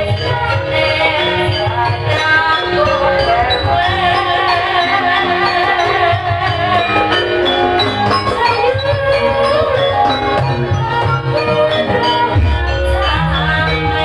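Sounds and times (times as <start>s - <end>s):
ringing metallophone notes: 0.0s - 14.0s
wavering melody line: 0.0s - 14.0s
low drum and gong beat: 12.4s - 14.0s.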